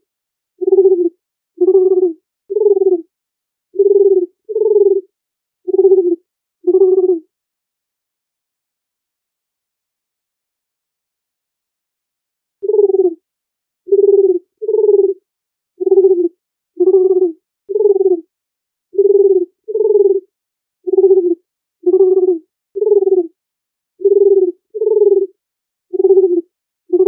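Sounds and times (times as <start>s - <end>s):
dove cooing: 0.6s - 3.1s, 3.8s - 5.1s, 5.7s - 7.2s, 12.6s - 13.2s, 13.9s - 15.2s, 15.8s - 18.3s, 19.0s - 20.3s, 20.9s - 23.4s, 24.0s - 27.0s.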